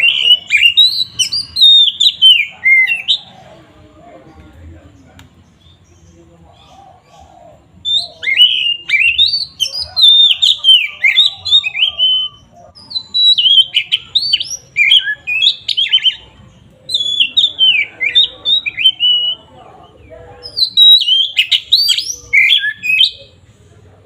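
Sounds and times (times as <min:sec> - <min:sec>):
bird singing whistled notes: 0:00.0 - 0:03.3, 0:07.8 - 0:19.6, 0:20.4 - 0:23.4.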